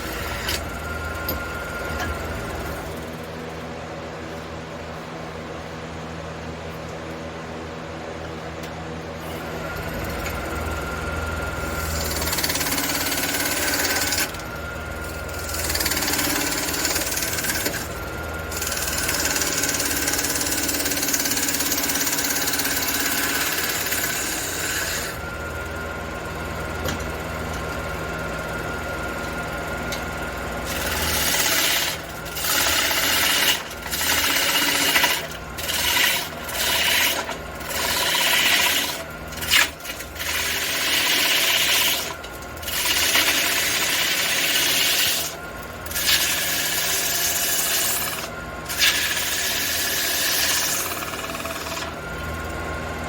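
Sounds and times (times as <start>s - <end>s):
tool rasping on spinning wood: 0.0s - 3.2s, 9.4s - 25.5s, 30.3s - 52.0s
wood lathe humming: 0.0s - 3.4s, 9.2s - 53.0s.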